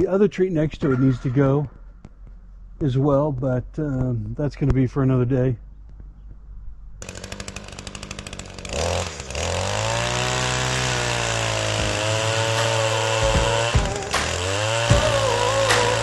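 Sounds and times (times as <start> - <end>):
chainsaw idling and revving: 7.0 - 16.0.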